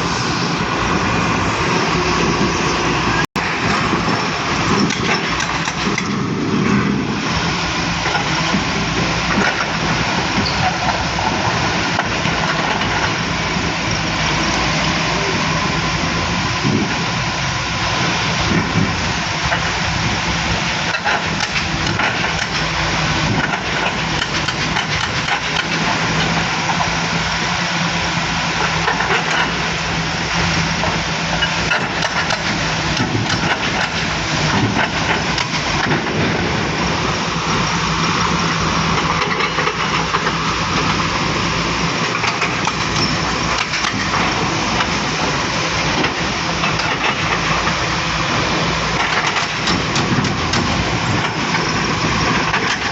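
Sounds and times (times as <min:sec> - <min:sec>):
high hum: 0:00.0 - 0:20.8
excavator diesel engine running: 0:00.0 - 0:52.9
knocks and clatter: 0:03.6 - 0:07.0, 0:20.9 - 0:22.7, 0:23.3 - 0:26.9, 0:30.8 - 0:36.6, 0:42.0 - 0:47.5, 0:48.9 - 0:52.9.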